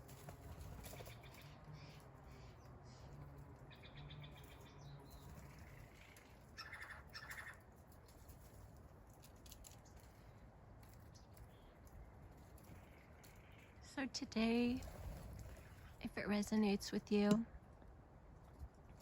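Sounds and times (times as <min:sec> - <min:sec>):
birds chirping: 0:00.0 - 0:08.0, 0:09.6 - 0:17.6
lower bird calls: 0:01.0 - 0:07.6.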